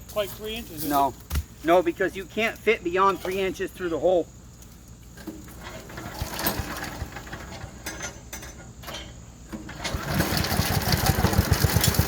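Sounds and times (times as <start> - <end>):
engine starting: 5.5 - 8.2, 8.8 - 12.0
mechanical rattling and clicks: 9.8 - 12.0.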